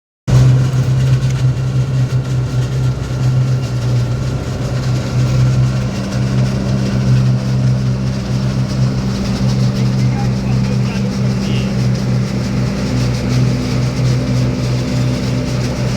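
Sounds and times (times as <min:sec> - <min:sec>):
diesel engine running: 0:00.3 - 0:15.9.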